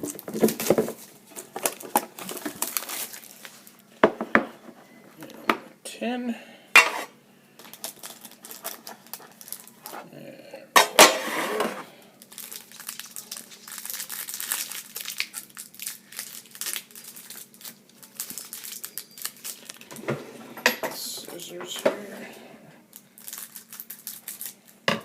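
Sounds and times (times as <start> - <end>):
plastic wrapping crinkling: 0.0 - 4.0, 7.6 - 10.0, 11.6 - 20.0, 22.9 - 24.8.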